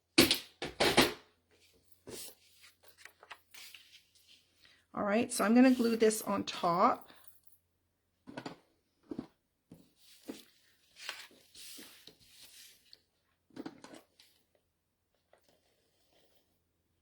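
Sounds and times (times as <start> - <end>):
faint paper rustles and taps: 2.0 - 4.4
paper scraping rustle: 2.0 - 4.6, 10.1 - 12.9.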